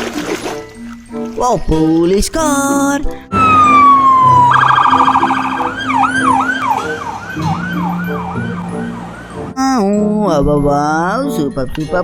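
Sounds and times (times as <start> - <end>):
police car siren: 3.3 - 9.6.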